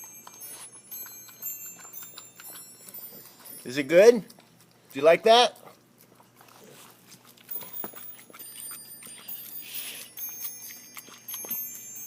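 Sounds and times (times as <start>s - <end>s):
dog chewing and gulping: 0.0s - 12.0s
faint high metallic ringing: 7.5s - 12.0s.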